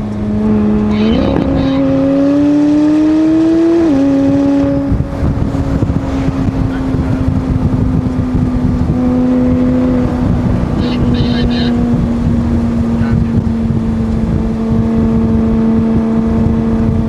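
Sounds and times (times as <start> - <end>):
car engine accelerating: 0.0 - 17.0.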